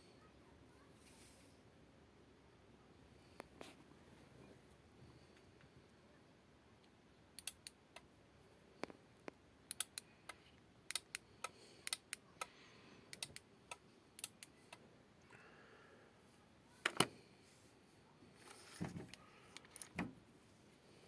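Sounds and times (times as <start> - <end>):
small sharp clicks: 7.4 - 8.1, 9.7 - 14.8.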